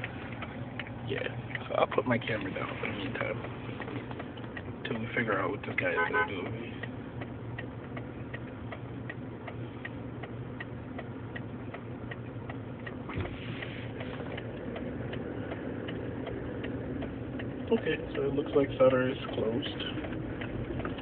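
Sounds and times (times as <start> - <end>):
car engine idling: 0.0 - 21.0.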